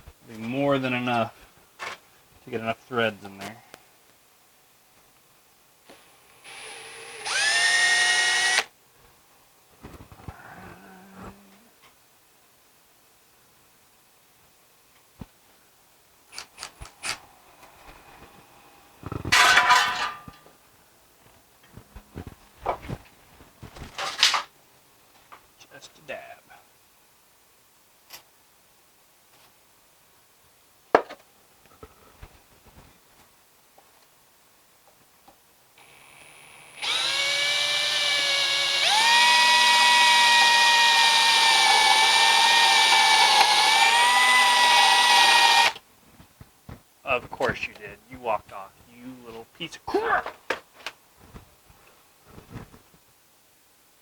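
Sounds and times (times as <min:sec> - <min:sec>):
electric hand drill whining: 0:06.3 - 0:08.7, 0:35.8 - 0:45.8
rasping burst: 0:06.4 - 0:08.7, 0:35.8 - 0:45.8
metal tools clinking: 0:19.3 - 0:20.4.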